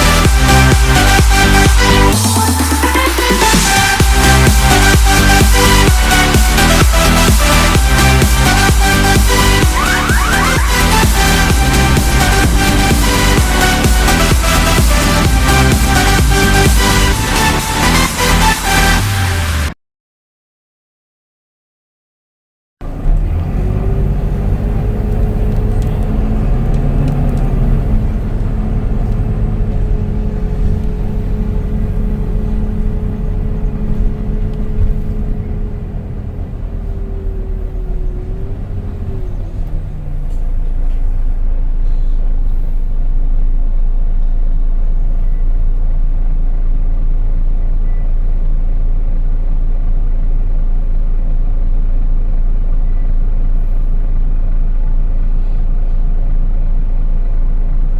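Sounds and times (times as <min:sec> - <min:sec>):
bus drivetrain rumble and whine: 0:00.0 - 0:19.8, 0:22.8 - 0:57.9.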